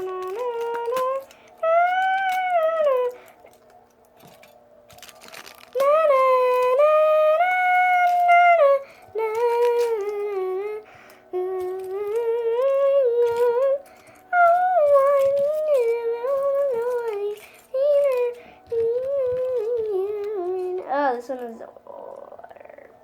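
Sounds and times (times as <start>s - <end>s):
high voice humming: 0.0s - 3.6s, 5.8s - 23.0s.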